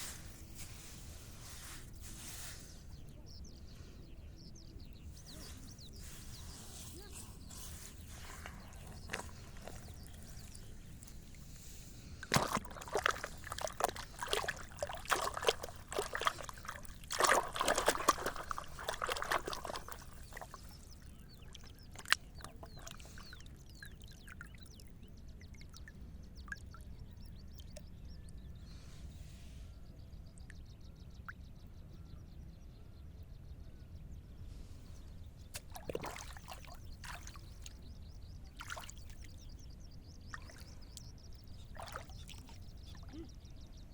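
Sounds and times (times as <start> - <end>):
water splashing and pouring: 12.2 - 20.7.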